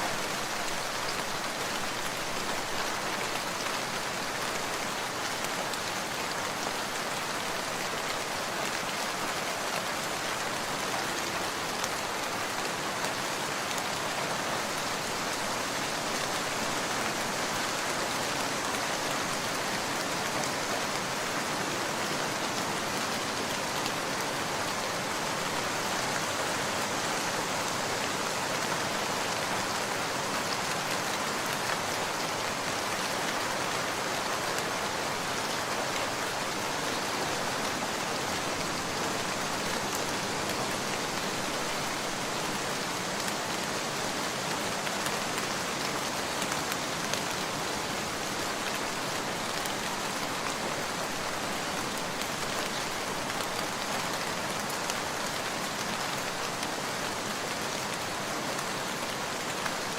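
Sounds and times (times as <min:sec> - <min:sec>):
raindrops pattering on surfaces: 0:00.0 - 0:25.9, 0:29.3 - 0:59.9
heavy rain falling: 0:00.0 - 0:59.9.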